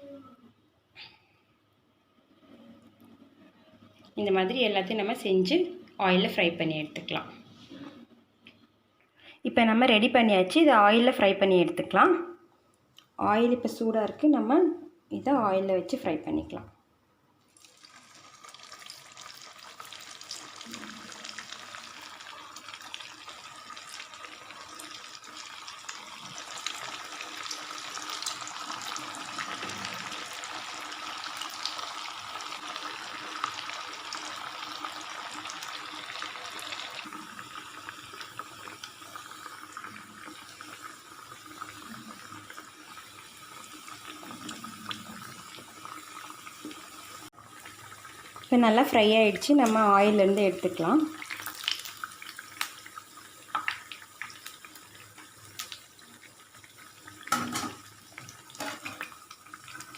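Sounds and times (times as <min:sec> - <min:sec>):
cutlets sizzling in hot oil: 0:17.5 - 0:59.9.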